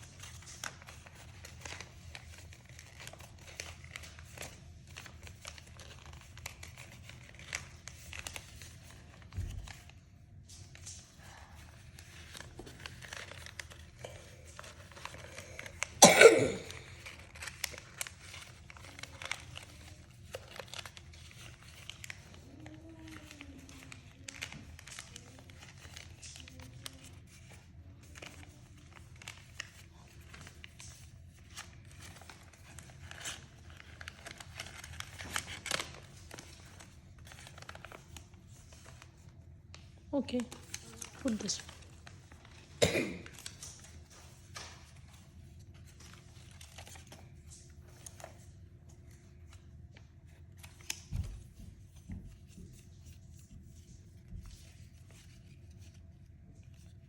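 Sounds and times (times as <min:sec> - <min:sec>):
paper and card rustling: 0:00.0 - 0:57.0.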